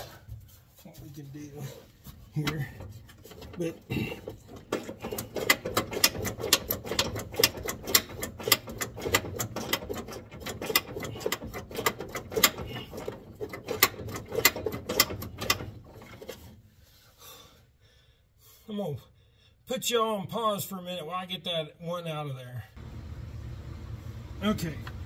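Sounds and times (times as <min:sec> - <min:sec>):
ratchet wrench clicking: 0:05.0 - 0:12.9.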